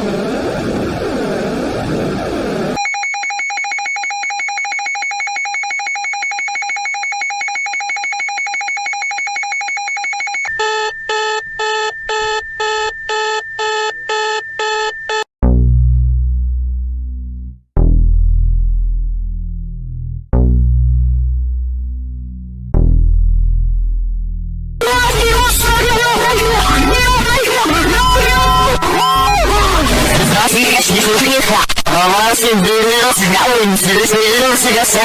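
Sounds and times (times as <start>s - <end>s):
buzzing alarm tone: 0.0s - 16.1s, 24.8s - 31.2s
electronic beeps: 2.7s - 15.3s, 24.9s - 31.2s
loud deep tone: 15.4s - 30.7s.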